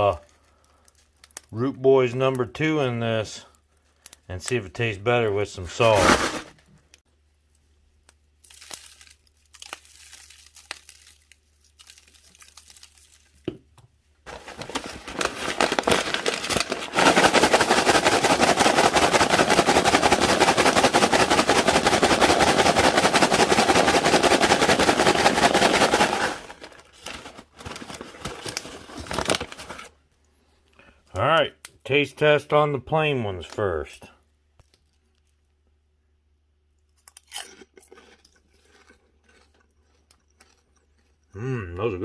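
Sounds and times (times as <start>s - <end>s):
bag rustling: 5.8s - 6.6s, 14.3s - 17.7s
pork rinds rattling in a bag: 8.4s - 13.4s, 14.3s - 29.9s.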